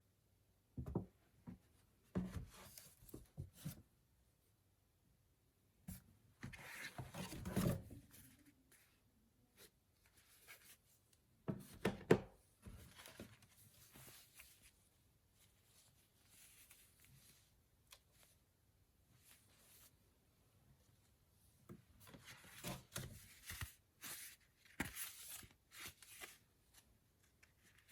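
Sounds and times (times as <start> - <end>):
paper rustling: 22.3 - 27.9.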